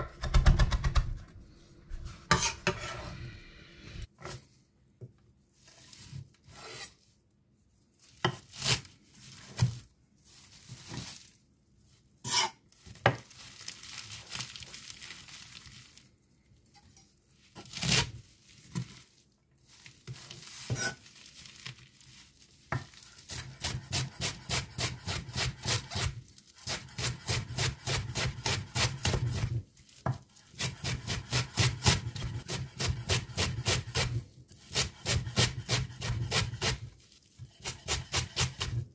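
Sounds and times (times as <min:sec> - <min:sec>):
knife scraping board: 0:02.0 - 0:04.4, 0:05.7 - 0:07.0, 0:12.3 - 0:12.6, 0:20.6 - 0:21.0, 0:23.3 - 0:29.6, 0:30.5 - 0:38.8
knife chopping on board: 0:26.7 - 0:36.8.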